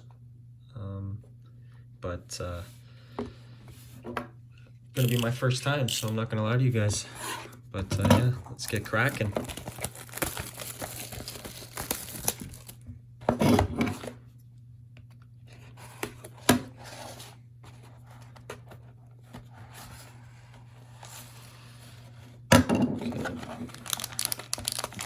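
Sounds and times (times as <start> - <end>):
wrapping tearing and crinkling: 8.6 - 12.8, 23.3 - 25.0.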